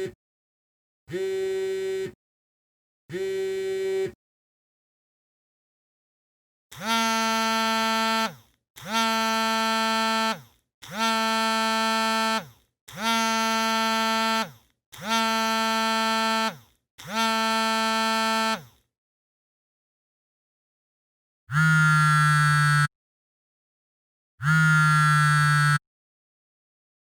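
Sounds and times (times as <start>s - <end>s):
mobile phone vibrating: 1.1s - 2.2s, 3.1s - 4.2s, 6.7s - 18.8s, 21.5s - 22.9s, 24.4s - 25.8s.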